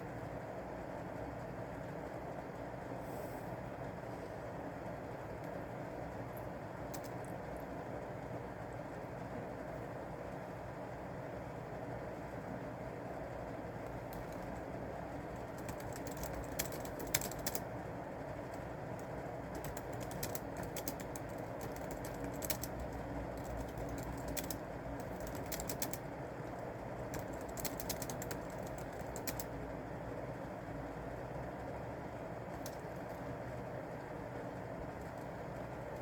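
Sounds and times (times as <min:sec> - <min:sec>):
steady background hum: 0:00.0 - 0:36.0
computer keyboard typing: 0:06.8 - 0:07.7, 0:13.8 - 0:29.6, 0:32.5 - 0:33.3.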